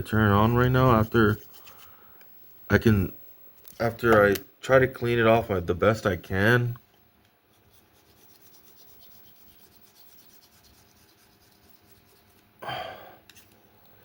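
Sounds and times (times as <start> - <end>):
rubbing and scraping on screen: 0.0 - 2.6, 3.2 - 4.1, 7.5 - 12.6.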